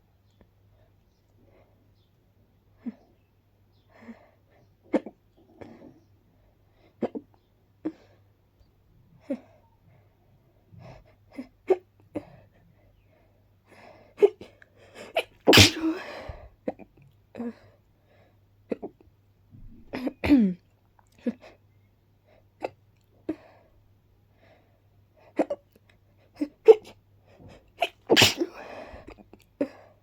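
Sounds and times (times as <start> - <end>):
sharp hiccups: 15.2 - 16.2, 27.8 - 28.6
woman sneezing: 15.2 - 16.4, 27.8 - 28.9.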